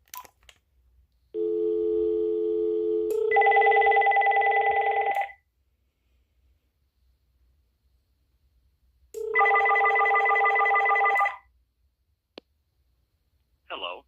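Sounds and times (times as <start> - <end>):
dial tone: 1.4 - 5.4, 9.2 - 11.4.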